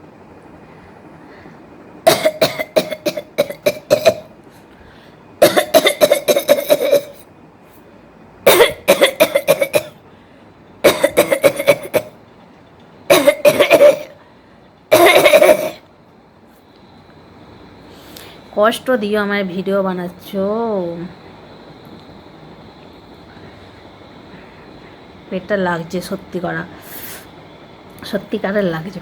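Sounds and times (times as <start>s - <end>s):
woman coughing: 2.1s - 4.3s, 5.4s - 7.2s, 8.5s - 10.0s, 10.8s - 12.2s, 13.1s - 14.2s, 14.9s - 15.8s.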